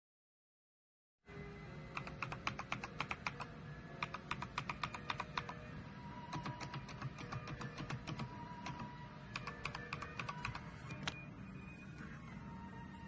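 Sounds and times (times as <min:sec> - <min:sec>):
mechanical keyboard key clicks: 0:02.0 - 0:05.6, 0:06.3 - 0:11.2.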